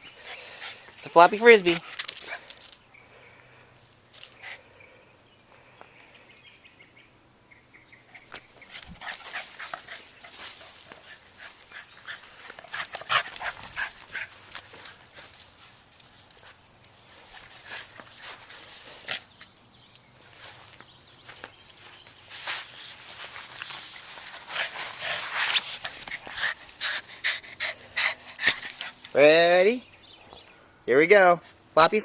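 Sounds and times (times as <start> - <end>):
rapid scuffling and rustling: 8.2 - 19.6, 20.2 - 29.3.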